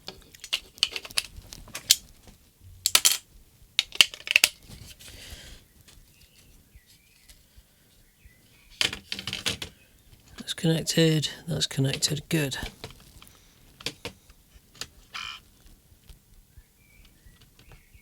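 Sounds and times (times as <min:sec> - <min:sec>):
plastic parts clicking: 0:00.0 - 0:02.0, 0:02.8 - 0:03.2, 0:03.8 - 0:05.1, 0:08.8 - 0:09.7, 0:11.9 - 0:15.0.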